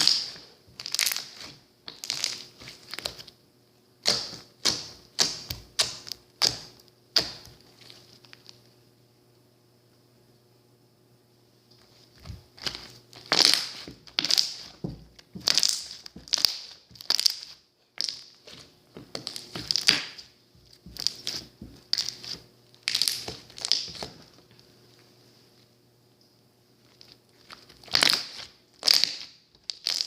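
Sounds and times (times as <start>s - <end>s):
slime squishing: 0.0s - 3.4s, 4.0s - 8.6s, 11.8s - 24.4s, 26.8s - 30.0s.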